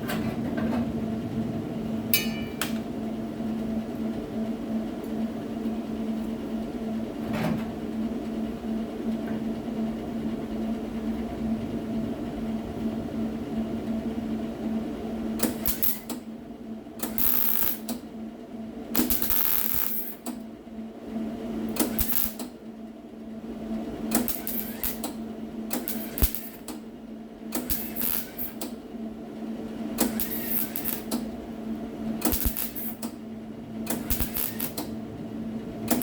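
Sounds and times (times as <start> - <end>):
electrical hum: 0.0 - 36.0
welding crackling hiss: 15.4 - 16.1, 17.0 - 18.0, 19.0 - 20.2, 21.8 - 22.4, 24.1 - 25.1, 25.7 - 26.7, 27.6 - 28.6, 30.0 - 31.3, 32.2 - 33.1, 33.9 - 34.9.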